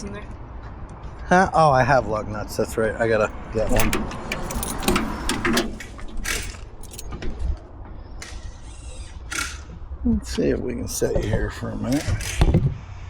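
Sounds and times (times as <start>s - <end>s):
small metal parts clinking: 3.6s - 7.2s.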